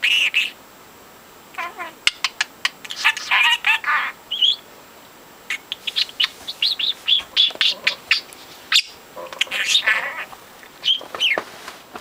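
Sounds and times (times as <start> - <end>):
budgerigar chattering: 0.0 - 0.6, 1.6 - 4.6, 5.5 - 11.4.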